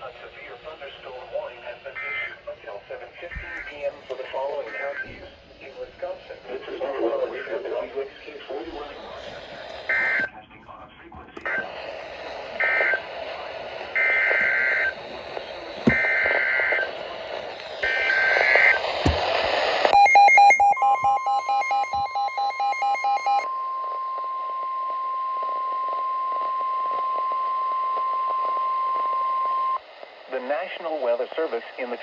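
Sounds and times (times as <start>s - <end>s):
radio hiss: 0.0s - 21.2s, 25.4s - 32.0s
rapid electronic beeping: 8.8s - 10.3s, 11.4s - 23.4s
steady warning alarm tone: 8.8s - 10.3s, 11.4s - 23.4s.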